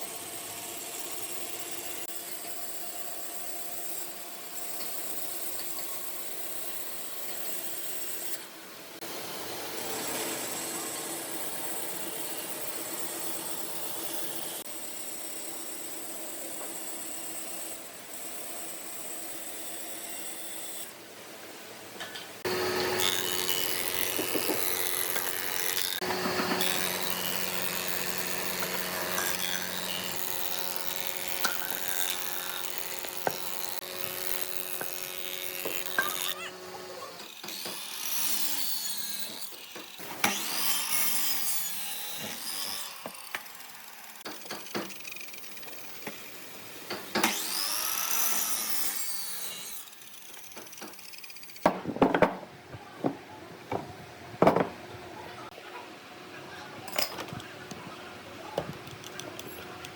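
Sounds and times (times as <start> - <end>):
power tool on wood: 0.0 - 20.9, 22.4 - 54.7
knocks on wood: 51.6 - 54.8.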